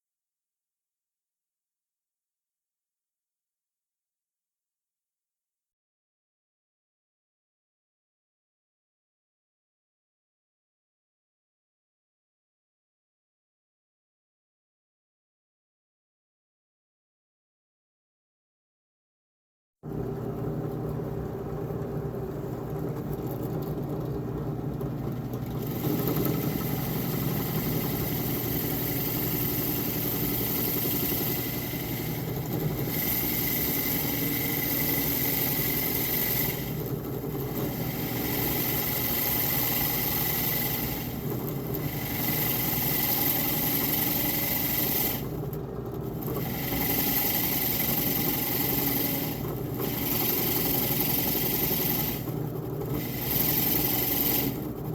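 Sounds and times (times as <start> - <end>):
power tool motor running: 24.9 - 54.9.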